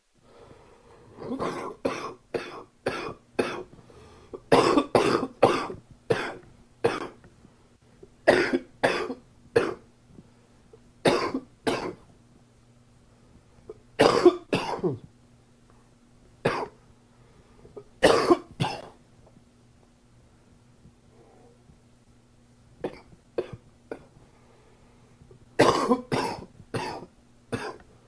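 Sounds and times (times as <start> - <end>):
man coughing: 1.2 - 3.7, 4.5 - 7.2, 8.3 - 9.8, 11.1 - 12.0, 14.0 - 15.1, 16.5 - 16.8, 18.0 - 19.0, 25.6 - 27.8.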